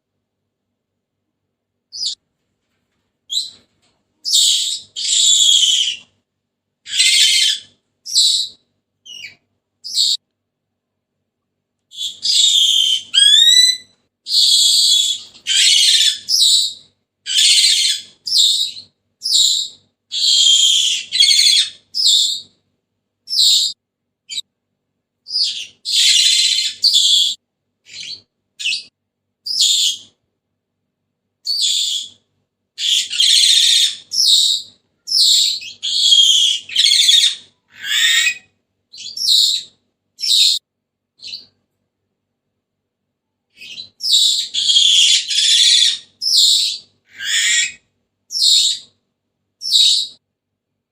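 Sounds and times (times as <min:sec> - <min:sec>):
parrot calling: 0:01.9 - 0:02.2, 0:04.2 - 0:06.1, 0:06.9 - 0:10.2, 0:11.9 - 0:22.5, 0:23.3 - 0:24.4, 0:25.3 - 0:30.1, 0:31.4 - 0:32.2, 0:32.8 - 0:40.6, 0:43.6 - 0:48.9, 0:49.6 - 0:50.2.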